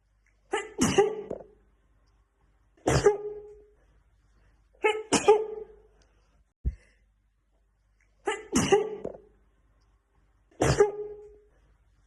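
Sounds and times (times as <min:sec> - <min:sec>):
woman sneezing: 0:00.5 - 0:01.4, 0:02.8 - 0:03.5, 0:04.8 - 0:05.7, 0:08.2 - 0:09.1, 0:10.6 - 0:11.3.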